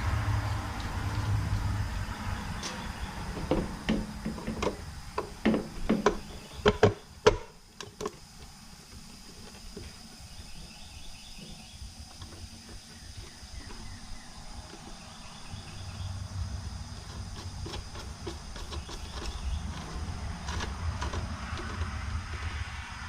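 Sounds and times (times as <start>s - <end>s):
crickets chirping: 0.0s - 23.0s
sharp knocks and clicks: 2.6s - 8.2s, 16.9s - 22.5s.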